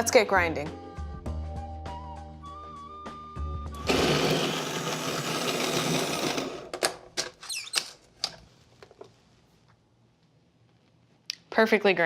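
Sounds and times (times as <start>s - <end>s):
coffee grinder grinding beans: 3.8s - 6.8s.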